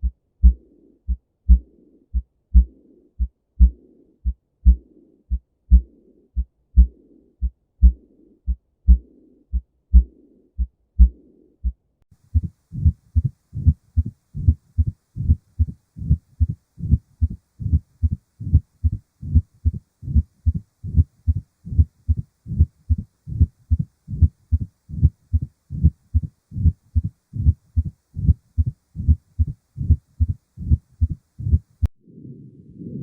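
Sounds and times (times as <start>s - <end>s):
heartbeat thumps: 0.0s - 31.9s.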